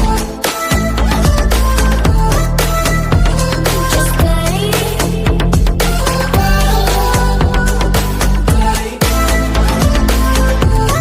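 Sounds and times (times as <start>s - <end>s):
pop music with deep bass: 0.0s - 11.0s.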